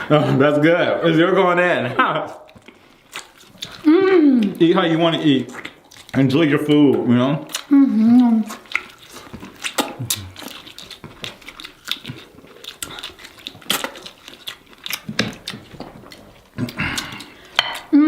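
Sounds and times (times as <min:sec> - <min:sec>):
wet chewing: 0:02.1 - 0:18.0
slurping: 0:02.3 - 0:18.0
lip smacks: 0:02.4 - 0:04.6, 0:07.4 - 0:18.0.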